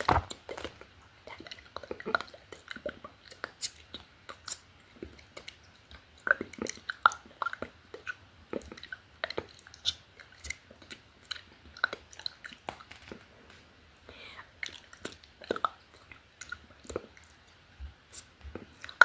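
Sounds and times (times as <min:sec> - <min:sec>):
wet mouth clicks and smacks: 0:01.3 - 0:13.1, 0:14.6 - 0:17.4
person whispering: 0:18.1 - 0:18.4.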